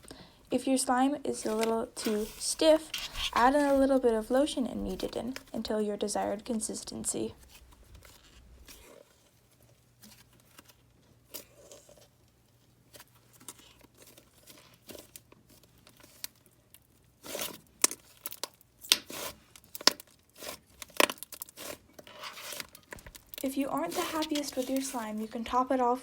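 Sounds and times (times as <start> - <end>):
slime crackly tearing pops: 17.2 - 24.2.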